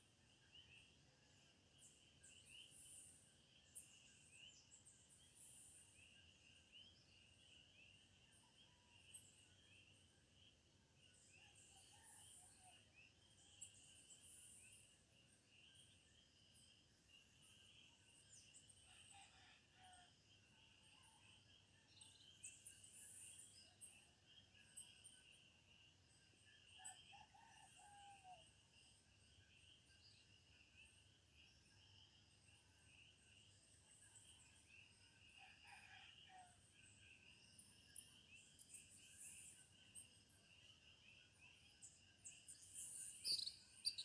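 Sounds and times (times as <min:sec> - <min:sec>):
insects chorus: 0:29.3 - 0:44.0
short high chirps and calls: 0:43.3 - 0:44.0.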